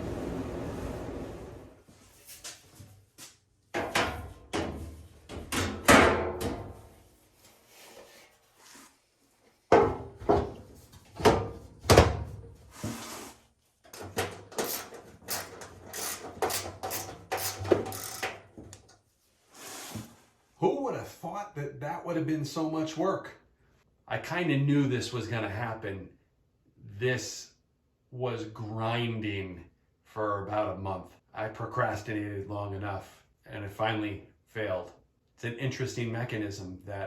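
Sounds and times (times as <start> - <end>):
dryer parts clunking and scraping: 3.7 - 6.9, 9.7 - 13.2, 13.8 - 19.0.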